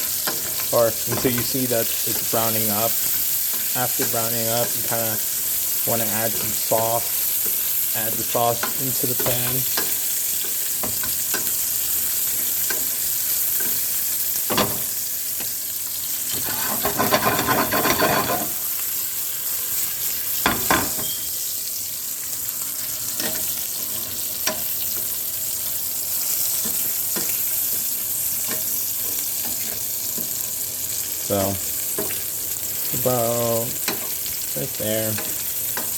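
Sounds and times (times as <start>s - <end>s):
meat sizzling in a frying pan: 0.0s - 35.9s
utensil scraping a pan: 16.2s - 18.8s.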